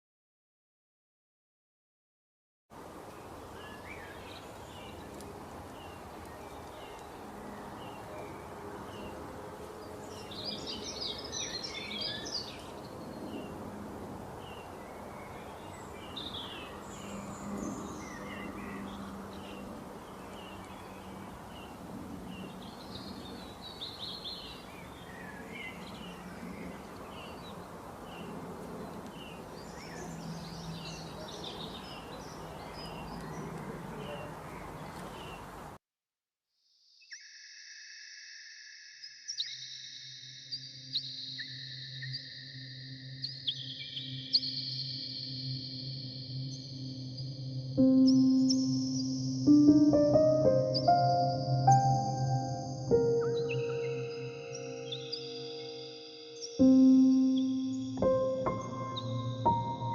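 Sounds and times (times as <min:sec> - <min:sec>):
songbirds chirping: 0:02.8 - 0:35.8, 0:39.3 - 0:59.9
background hiss: 0:44.4 - 0:59.9.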